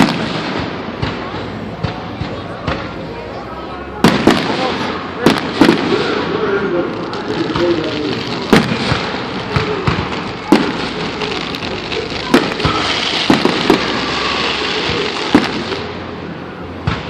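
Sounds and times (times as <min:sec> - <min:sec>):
crowd voices: 0:00.0 - 0:17.0
fireworks bangs: 0:00.0 - 0:17.0
steady hiss: 0:04.3 - 0:17.0.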